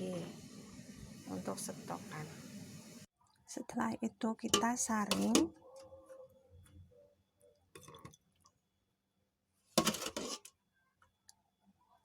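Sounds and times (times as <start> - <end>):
kitchenware clatter: 4.5 - 5.5, 9.8 - 10.5.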